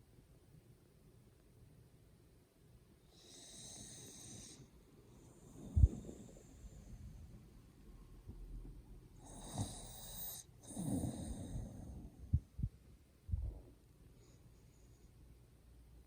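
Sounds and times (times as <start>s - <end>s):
dog snoring with whistle: 3.1s - 4.7s, 9.2s - 12.2s.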